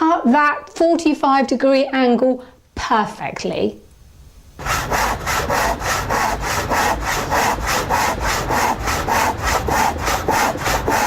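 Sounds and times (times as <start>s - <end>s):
handsaw cutting timber: 4.6s - 11.0s.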